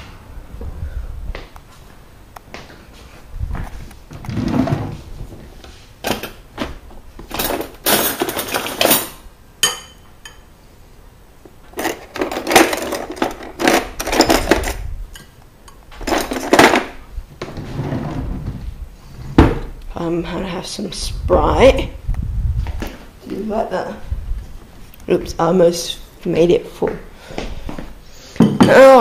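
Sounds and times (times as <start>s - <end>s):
dishes and cutlery clattering: 7.3s - 10.4s.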